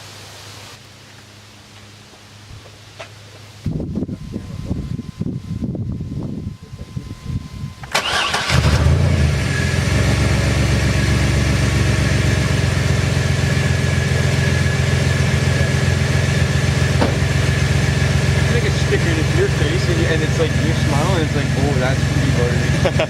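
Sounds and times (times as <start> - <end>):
van engine cranking and idling: 7.8 - 22.6.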